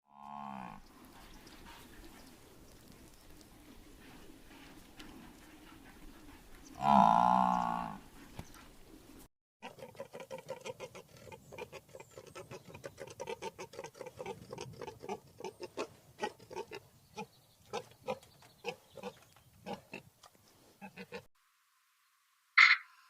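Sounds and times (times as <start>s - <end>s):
pigs grunting: 6.8s - 8.0s, 9.6s - 20.1s.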